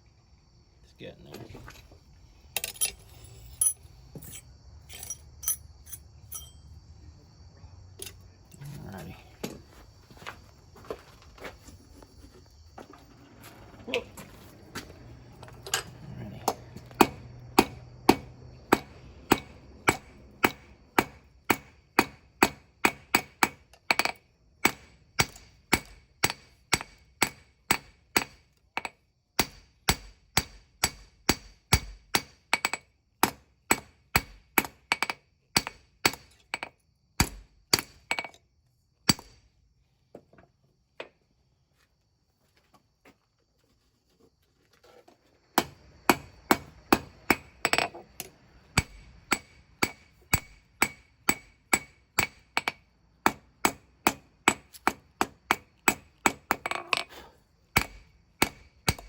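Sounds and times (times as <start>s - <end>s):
hammer ringing on anvil: 6.3s - 6.6s.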